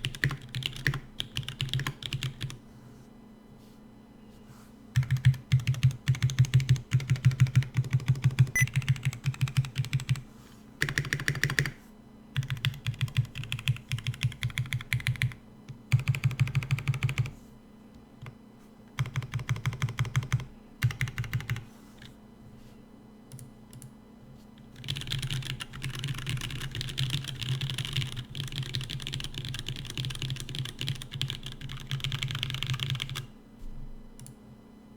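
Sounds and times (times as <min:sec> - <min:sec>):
mechanical keyboard typing: 0:00.0 - 0:02.6, 0:05.0 - 0:10.2, 0:10.8 - 0:11.8, 0:12.4 - 0:17.3, 0:19.0 - 0:22.1, 0:24.8 - 0:33.3.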